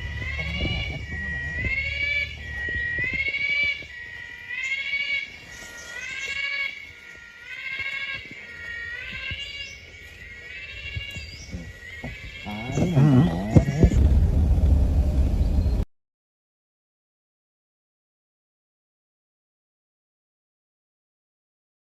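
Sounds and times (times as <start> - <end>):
animal high rising calls: 0.0 - 3.9.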